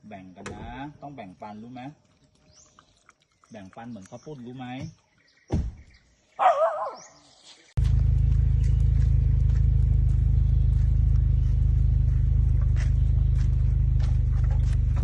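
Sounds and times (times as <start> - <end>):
loud low rumble: 7.8 - 15.0.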